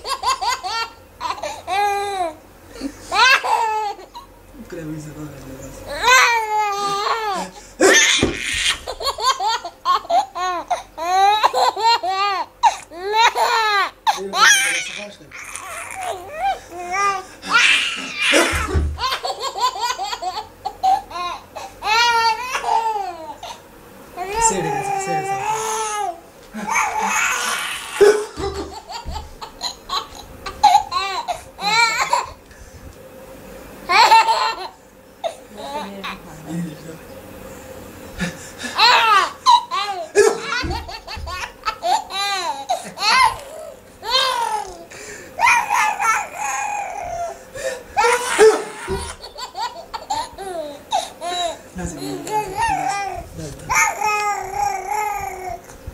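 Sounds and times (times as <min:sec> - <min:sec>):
small child laughing: 0:00.0 - 0:04.3, 0:05.9 - 0:14.9, 0:16.8 - 0:23.6, 0:24.2 - 0:32.4, 0:33.9 - 0:34.8, 0:38.2 - 0:47.4, 0:48.0 - 0:55.6
young child laughing: 0:26.6 - 0:32.4, 0:38.2 - 0:47.4, 0:48.0 - 0:53.2.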